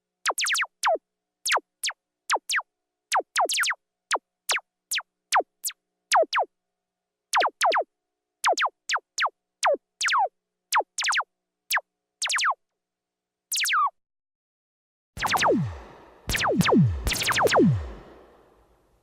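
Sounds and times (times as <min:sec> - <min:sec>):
laser gun zaps sweeping down: 0:15.2 - 0:18.6.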